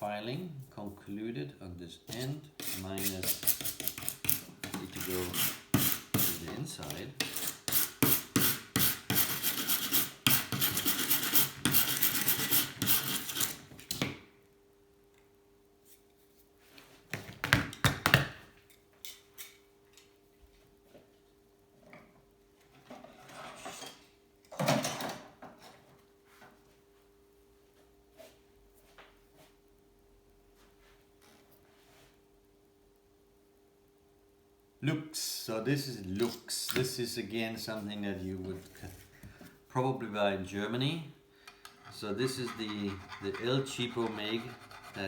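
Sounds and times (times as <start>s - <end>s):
hand file rasping on metal: 2.1s - 6.5s, 7.2s - 13.6s, 41.8s - 45.0s.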